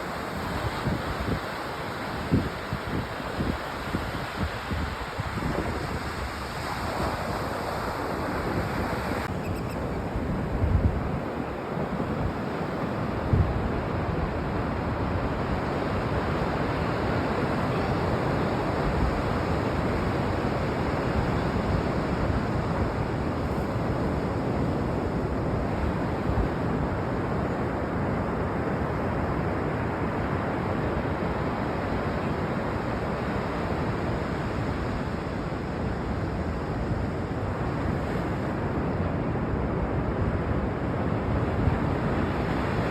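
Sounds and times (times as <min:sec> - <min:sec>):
ocean surf washing onto beach: 0:00.0 - 0:42.9
wind blowing over microphone: 0:00.0 - 0:42.9.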